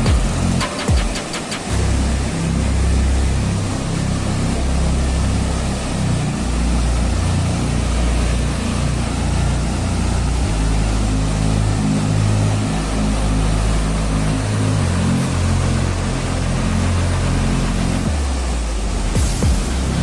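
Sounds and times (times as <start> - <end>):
rushing hiss: 0.0 - 1.8
steady low rumble: 0.0 - 20.0.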